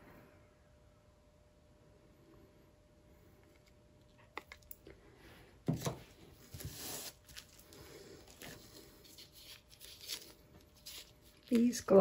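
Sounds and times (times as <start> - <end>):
rustling: 5.7 - 12.0.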